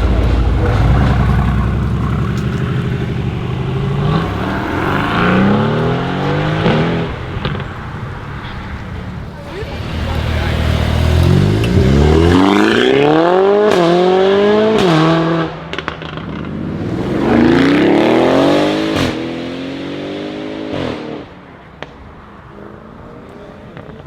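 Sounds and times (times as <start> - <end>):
faint exhaust pops: 0.0 - 12.3
car engine accelerating hard: 0.0 - 21.4
sharp exhaust cracks on upshifts: 0.0 - 22.6.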